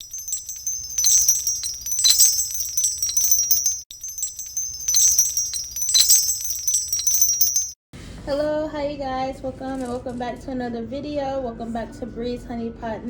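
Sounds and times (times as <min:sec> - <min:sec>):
tinkling chime music: 0:00.0 - 0:07.8.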